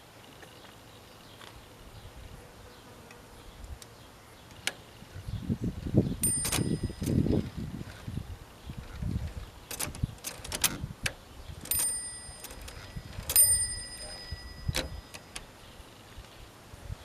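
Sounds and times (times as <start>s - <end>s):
typewriter bell ding: 6.2s - 7.3s, 11.7s - 15.4s
typewriter carriage rattling: 9.7s - 10.8s, 11.6s - 13.7s.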